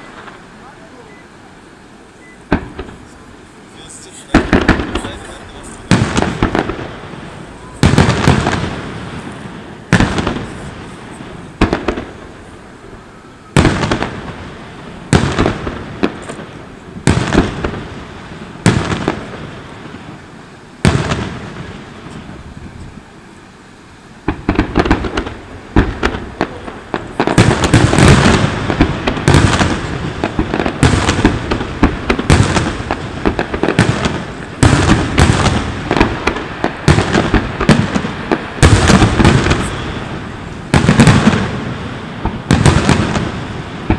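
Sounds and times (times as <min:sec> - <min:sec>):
fireworks booming: 0:00.0 - 0:43.9
fireworks crackling: 0:00.0 - 0:43.9.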